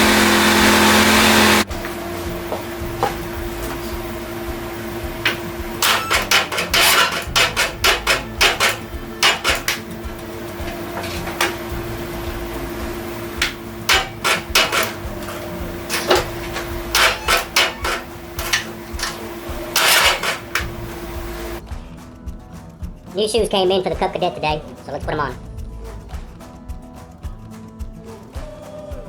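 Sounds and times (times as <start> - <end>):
steady low hum: 0.0 - 22.0
hand tool knocks and taps: 1.8 - 4.0.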